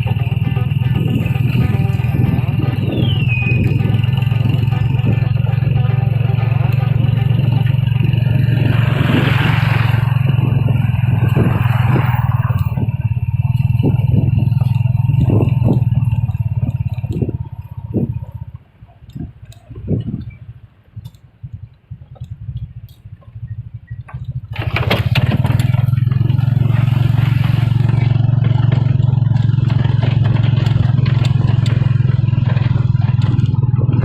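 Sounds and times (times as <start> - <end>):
rushing noise: 0.0 - 14.6
small vehicle engine running: 0.0 - 18.8, 23.9 - 34.0.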